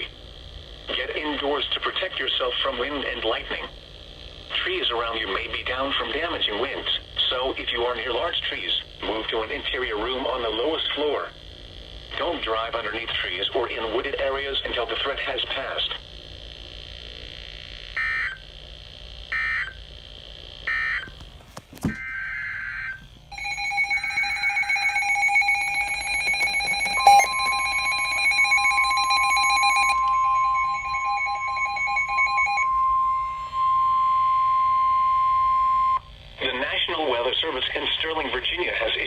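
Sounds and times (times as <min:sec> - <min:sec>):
steady warning alarm tone: 0:17.4 - 0:21.2, 0:21.8 - 0:37.3
loud steady alert tone: 0:21.9 - 0:36.0.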